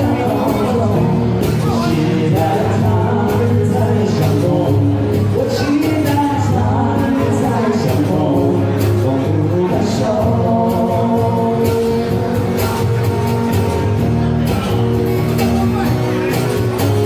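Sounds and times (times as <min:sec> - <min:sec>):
person singing: 0:00.0 - 0:13.4
live band playing pop: 0:00.0 - 0:17.0.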